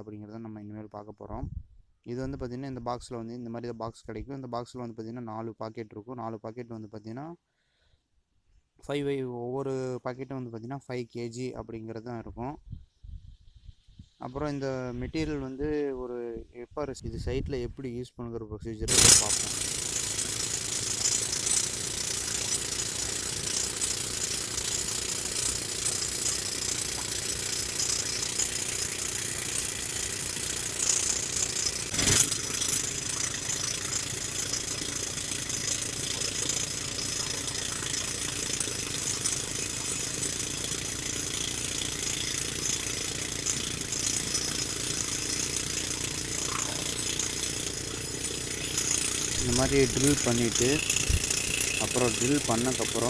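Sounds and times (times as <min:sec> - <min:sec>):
engine running steadily: 0:18.9 - 0:53.0
pneumatic rock drill hammering: 0:18.9 - 0:53.0.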